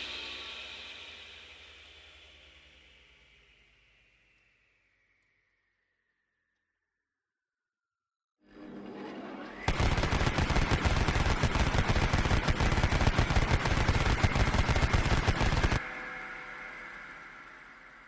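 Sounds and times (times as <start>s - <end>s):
rapid automatic gunfire: 9.7s - 15.8s.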